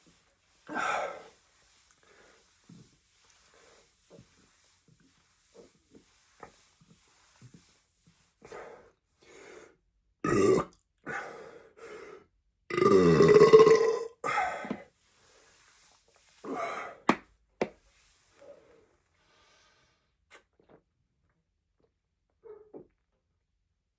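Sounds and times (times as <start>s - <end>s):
person belching: 10.2s - 10.8s, 12.7s - 14.2s.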